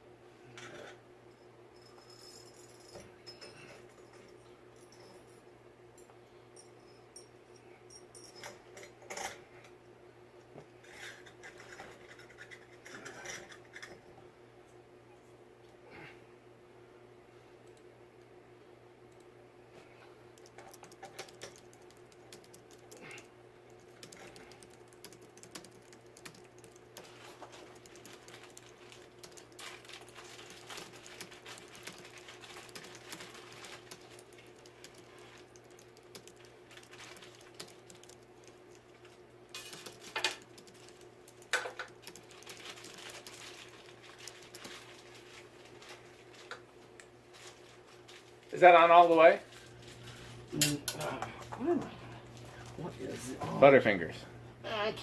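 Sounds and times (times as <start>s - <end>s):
faint hum: 0.0s - 55.0s
fan parts clicking and tapping: 20.3s - 54.1s.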